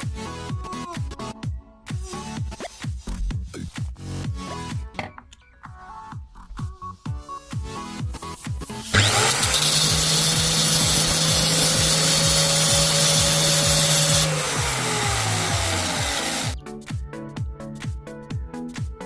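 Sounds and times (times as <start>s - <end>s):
electric power tool running: 8.8s - 16.6s.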